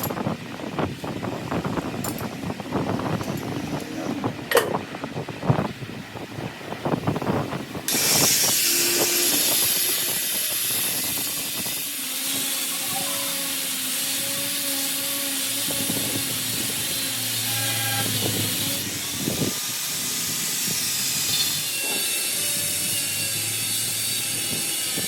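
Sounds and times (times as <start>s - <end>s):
metal tools knocking and clicking: 4.5s - 4.8s
pressurised gas jet hissing: 6.8s - 22.1s.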